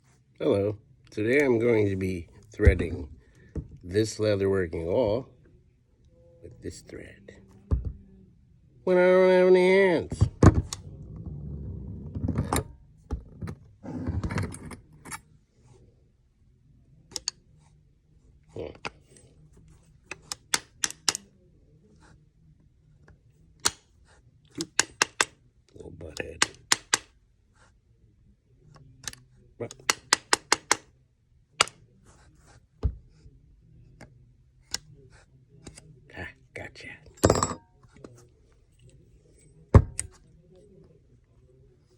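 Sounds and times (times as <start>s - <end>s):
hook prostheses clicking: 20.1s - 21.2s, 24.6s - 25.4s, 26.4s - 27.1s, 29.0s - 30.9s
sharp metal clicks: 20.2s - 21.2s.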